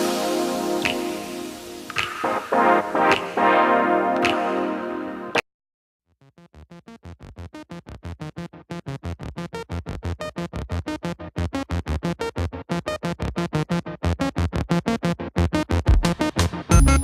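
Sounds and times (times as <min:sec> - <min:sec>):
pulsing synthesizer chord: 0:00.0 - 0:05.4.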